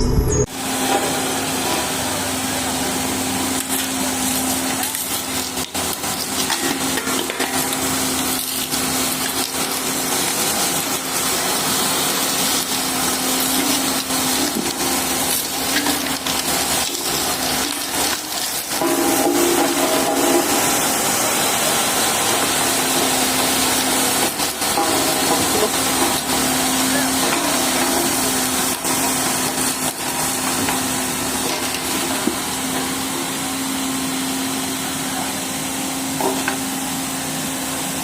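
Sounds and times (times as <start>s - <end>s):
road roller engine running: 0.0s - 38.0s
metal crackling and crunching: 3.3s - 33.4s.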